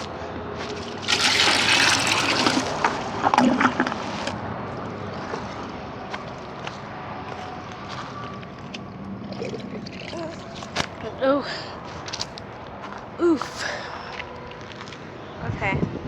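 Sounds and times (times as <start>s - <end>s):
water gurgling and trickling: 0.8s - 4.3s, 9.2s - 10.8s
water gushing and splashing: 0.9s - 4.0s.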